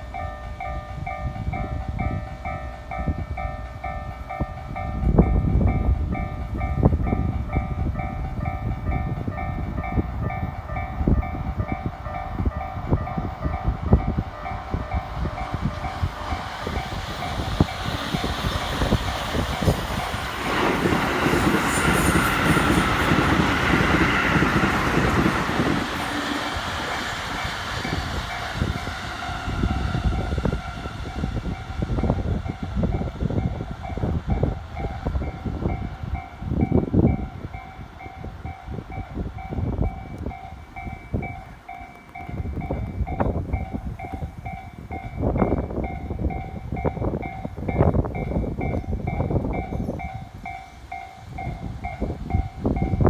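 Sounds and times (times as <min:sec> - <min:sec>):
electric train passing: 0:00.0 - 0:53.0
level-crossing warning bell ringing: 0:00.0 - 0:53.0
wheels clacking over rail joints: 0:09.9 - 0:30.6.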